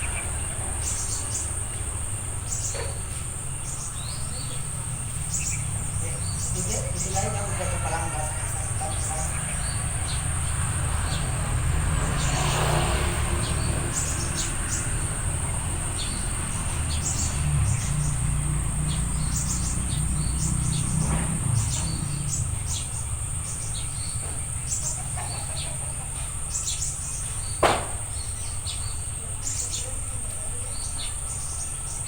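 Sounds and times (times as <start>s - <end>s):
small birds chirping: 0.0s - 32.0s
short knock: 27.6s - 28.0s.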